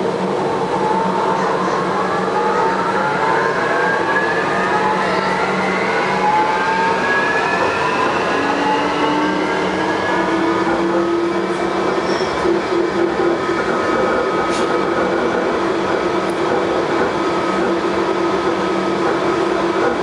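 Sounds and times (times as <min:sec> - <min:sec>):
train running noise: 0:00.0 - 0:20.0
train drive whine rising: 0:02.2 - 0:16.3.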